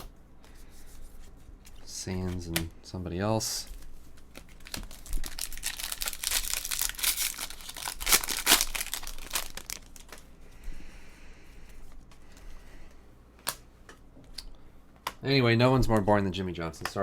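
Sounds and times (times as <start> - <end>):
foil wrappers crinkling and tearing: 4.2 - 10.3.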